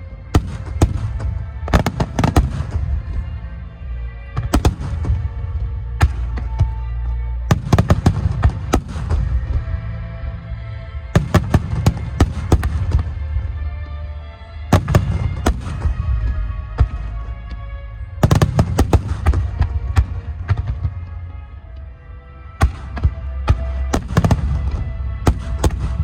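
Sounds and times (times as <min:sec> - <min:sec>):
music: 0:00.0 - 0:26.0
fireworks bursting with sharp bangs: 0:00.3 - 0:03.2, 0:04.4 - 0:06.8, 0:07.5 - 0:09.8, 0:11.2 - 0:13.4, 0:14.7 - 0:17.2, 0:18.2 - 0:21.1, 0:22.6 - 0:26.0.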